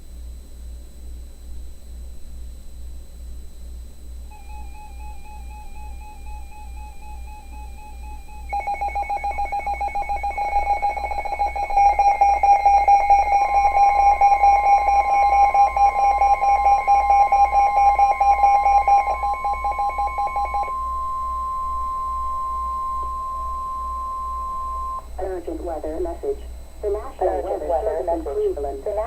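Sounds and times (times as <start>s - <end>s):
steady warning alarm tone: 4.2s - 29.0s
pulsing electronic ringing tone: 4.3s - 25.1s.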